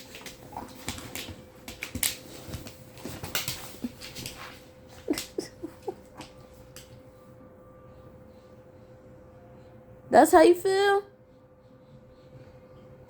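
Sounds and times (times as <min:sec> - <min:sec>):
dog paws clicking and scuffling: 0:00.0 - 0:07.0.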